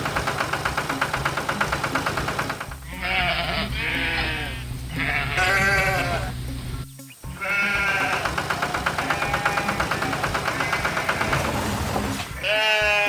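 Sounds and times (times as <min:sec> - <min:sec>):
background music with steady beat: 0:00.0 - 0:13.0
wavering bleats: 0:02.8 - 0:06.5, 0:07.2 - 0:13.0.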